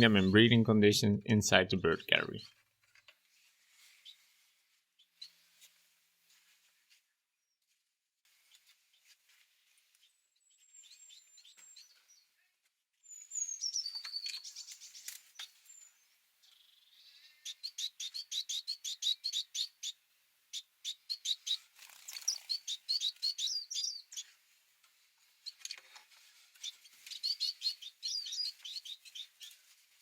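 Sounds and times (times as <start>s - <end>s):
finches chirping: 13.1s - 24.4s, 26.6s - 29.6s.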